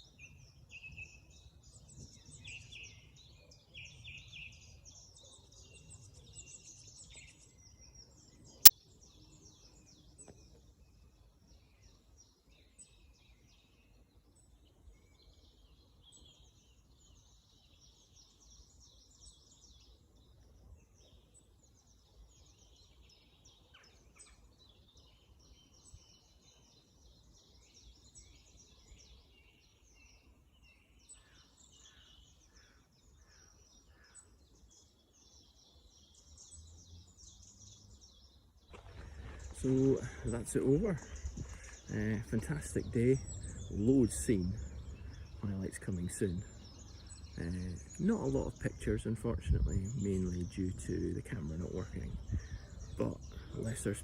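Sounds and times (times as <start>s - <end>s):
songbirds chorus: 0.0s - 54.0s
low background rumble: 38.7s - 53.7s.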